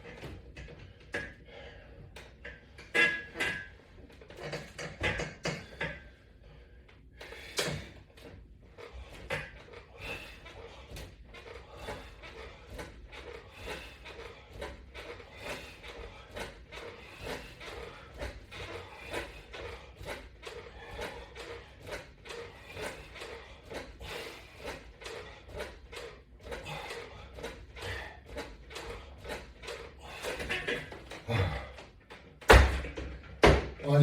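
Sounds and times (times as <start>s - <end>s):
exercise movement sounds: 0.0s - 34.0s.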